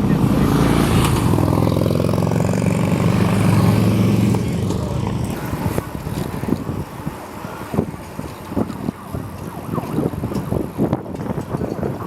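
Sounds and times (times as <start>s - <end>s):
vehicle engine running: 0.0s - 6.8s
wind noise on microphone: 0.0s - 12.0s.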